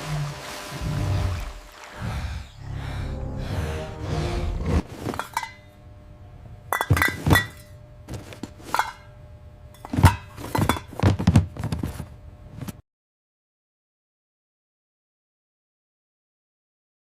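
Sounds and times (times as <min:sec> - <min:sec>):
background music: 0:02.6 - 0:04.9.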